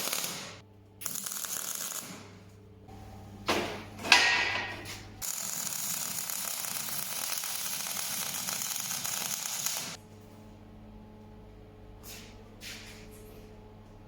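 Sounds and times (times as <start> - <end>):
tool crackling hiss: 0.0 - 2.3, 5.2 - 10.0.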